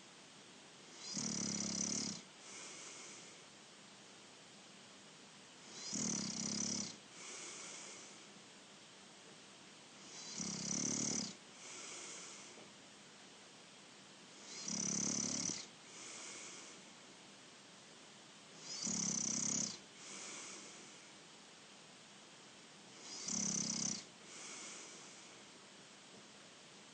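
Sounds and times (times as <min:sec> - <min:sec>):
person snoring: 0:01.0 - 0:03.4, 0:05.7 - 0:08.2, 0:10.1 - 0:12.6, 0:14.4 - 0:16.8, 0:18.6 - 0:21.0, 0:23.0 - 0:25.3
soft airy breath: 0:02.4 - 0:03.5, 0:07.1 - 0:08.4, 0:11.5 - 0:12.7, 0:15.6 - 0:17.1, 0:19.8 - 0:21.2, 0:24.0 - 0:25.6.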